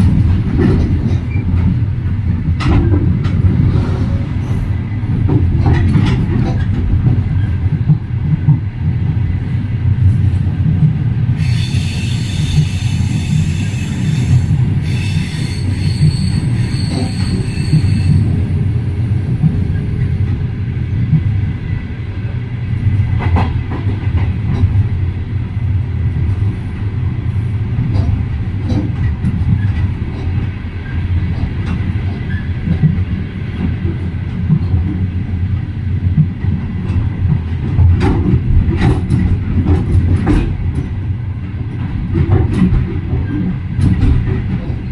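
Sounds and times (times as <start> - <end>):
train wheels rumbling on rails: 0.0 - 44.9
high-pitched wheel squeal: 11.4 - 18.3.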